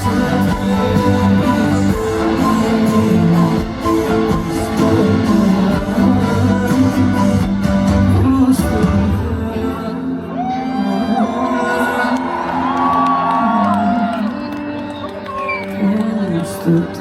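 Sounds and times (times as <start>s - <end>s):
live pop song over sound system: 0.0s - 17.0s
crowd whooping: 10.2s - 16.2s.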